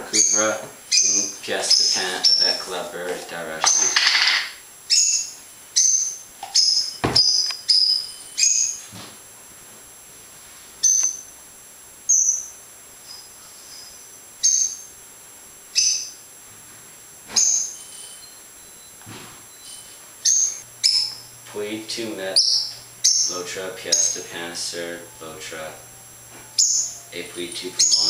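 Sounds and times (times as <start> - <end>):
bird chirping: 0.0 - 2.6, 3.7 - 8.8, 10.8 - 11.4, 12.1 - 15.0, 15.7 - 16.3, 17.3 - 28.0.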